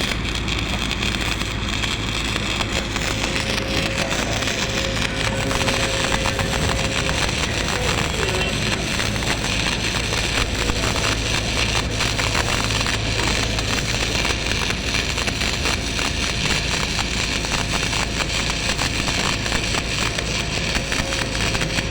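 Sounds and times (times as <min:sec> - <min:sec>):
welding arc crackling: 0:00.0 - 0:21.9
low hum: 0:00.2 - 0:17.1.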